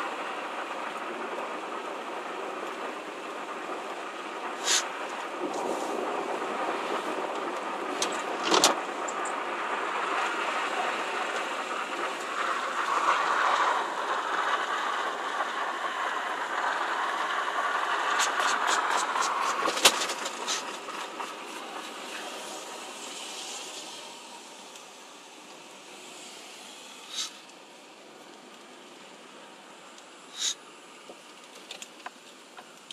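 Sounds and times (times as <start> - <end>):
car engine and road noise: 0.0 - 32.9.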